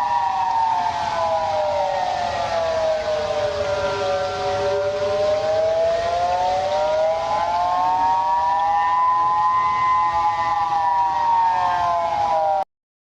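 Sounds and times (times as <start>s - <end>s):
warning siren wailing: 0.0s - 12.7s.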